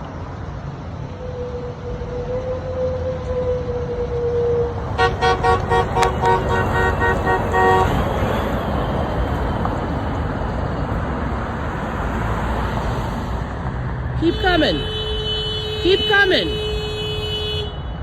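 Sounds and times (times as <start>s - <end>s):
passing traffic: 0.0s - 18.0s
car horn honking: 5.0s - 8.7s, 14.2s - 18.0s.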